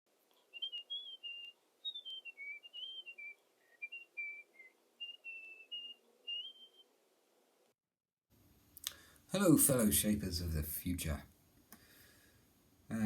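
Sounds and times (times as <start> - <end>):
person whistling a tune: 0.6 - 6.8.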